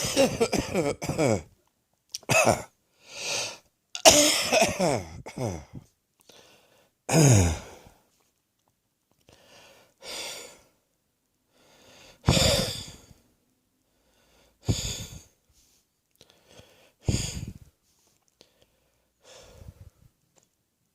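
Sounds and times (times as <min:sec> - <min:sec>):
wheezy laboured breathing: 0:02.9 - 0:03.7, 0:11.5 - 0:13.2, 0:13.9 - 0:15.4, 0:16.2 - 0:17.7.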